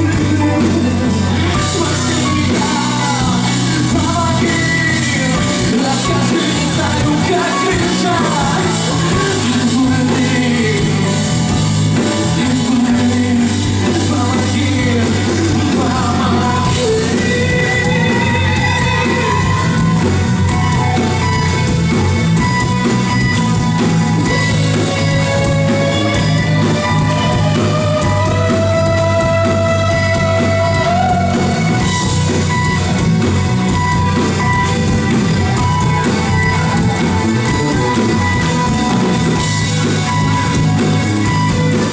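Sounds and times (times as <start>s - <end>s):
person singing: 0.0s - 21.5s, 24.2s - 32.8s
rock band playing: 0.0s - 41.9s.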